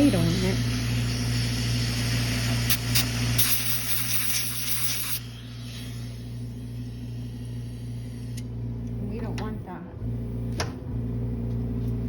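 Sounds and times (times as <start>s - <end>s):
metal instrument scraping amalgam: 0.0s - 6.4s.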